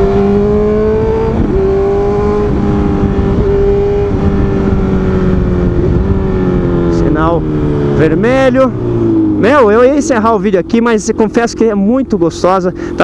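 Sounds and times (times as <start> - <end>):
motorcycle engine running: 0.0 - 13.0
wind and road noise: 0.0 - 13.0.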